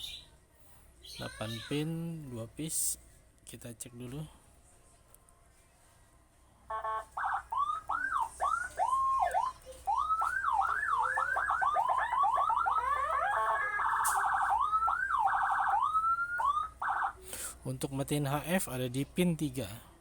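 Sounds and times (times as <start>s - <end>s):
electronic siren tones: 6.7s - 17.2s.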